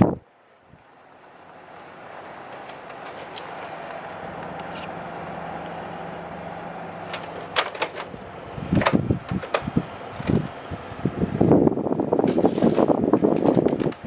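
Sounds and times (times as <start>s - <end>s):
air conditioner humming: 0.0s - 14.0s
sharp clicks and knocks: 0.8s - 5.8s, 7.1s - 8.2s, 8.8s - 10.5s.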